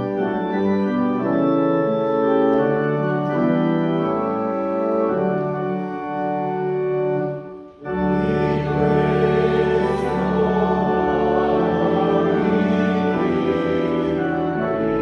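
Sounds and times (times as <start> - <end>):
organ playing chords: 0.0 - 15.0
congregation singing: 7.8 - 15.0.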